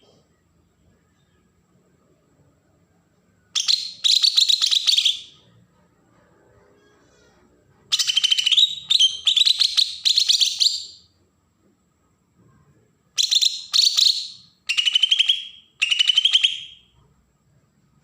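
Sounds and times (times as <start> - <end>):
bird singing scratchy chatter: 7.9 - 11.0.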